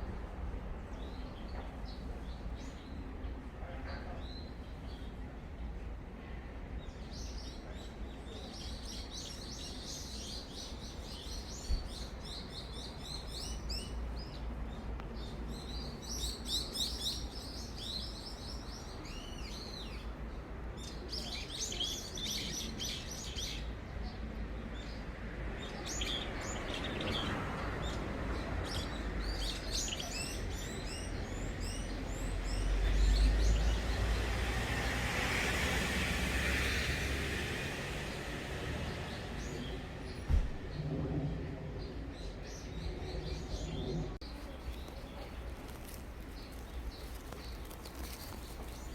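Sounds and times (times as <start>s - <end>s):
small birds chirping: 6.9s - 48.9s
broad rushing noise: 33.9s - 44.6s.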